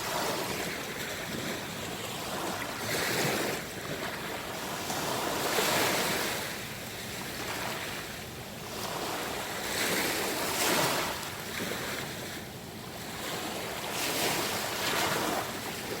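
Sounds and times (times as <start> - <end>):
sea waves washing onto shore: 0.0 - 16.0.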